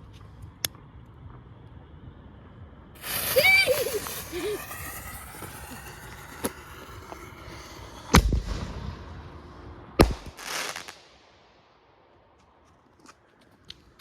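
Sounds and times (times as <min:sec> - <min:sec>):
firecrackers banging: 0:03.0 - 0:11.2.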